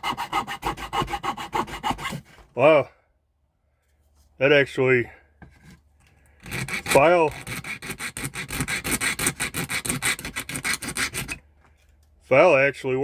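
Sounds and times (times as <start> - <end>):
small file scraping: 0.0 - 2.6, 5.4 - 12.0.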